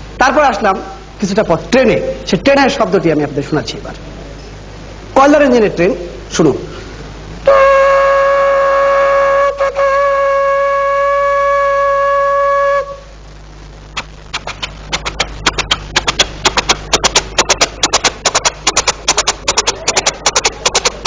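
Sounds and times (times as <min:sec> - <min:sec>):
steam locomotive whistle: 0:07.5 - 0:13.1.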